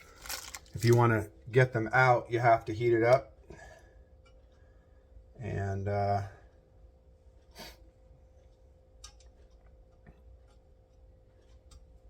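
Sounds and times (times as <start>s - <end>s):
faint steady hum: 0.0s - 12.0s
faint clicks and light taps: 8.4s - 12.0s.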